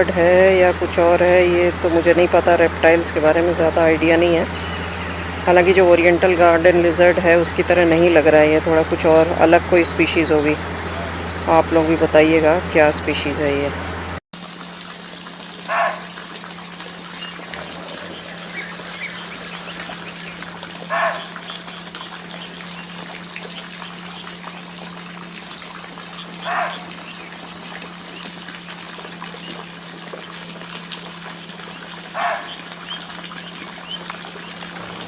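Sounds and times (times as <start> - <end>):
steady low hum: 0.0 - 14.2, 16.8 - 35.0
deer barking: 15.7 - 16.1, 17.5 - 21.5, 26.4 - 26.9, 32.2 - 32.6.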